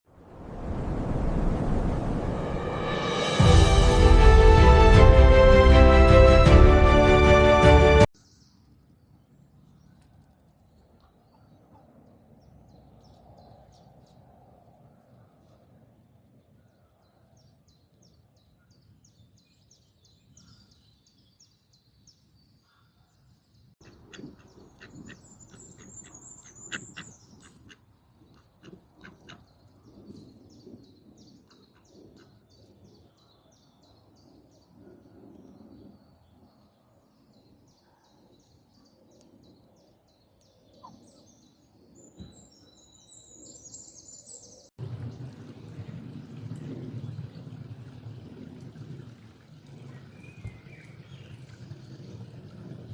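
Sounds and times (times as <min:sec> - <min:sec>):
low rushing sound: 0:00.1 - 0:08.1
birds chirping: 0:18.5 - 0:36.4.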